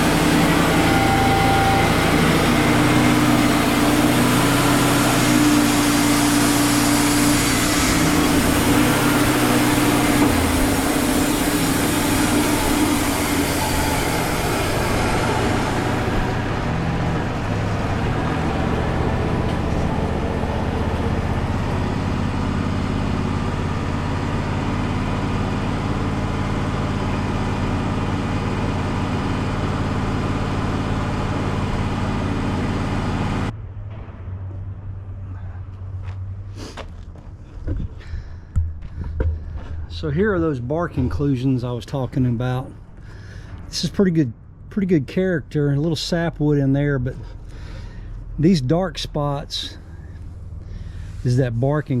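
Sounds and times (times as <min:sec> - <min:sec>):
band saw blade cutting log: 0:00.0 - 0:33.5
sawmill engine running: 0:00.0 - 0:52.0.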